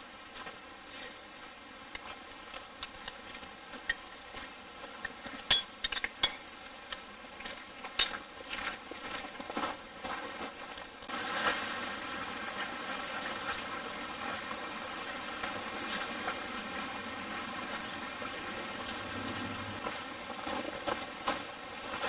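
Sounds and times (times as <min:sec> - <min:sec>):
cookware and utensils clinking: 0:05.4 - 0:06.5, 0:08.0 - 0:08.3.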